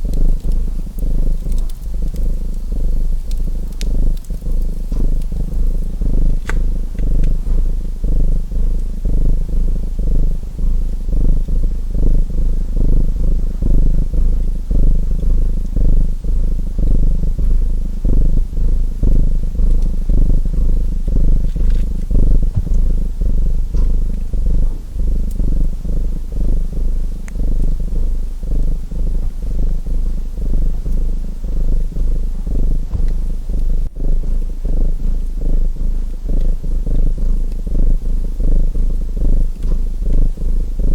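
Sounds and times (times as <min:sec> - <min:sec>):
wood fire crackles: 0:00.0 - 0:09.4
cat purring: 0:00.0 - 0:40.9.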